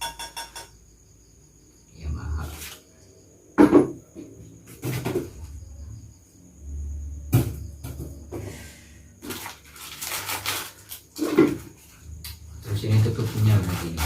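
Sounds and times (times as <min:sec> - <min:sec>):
packaging rustling and scraping: 0:09.2 - 0:12.0, 0:12.7 - 0:14.0.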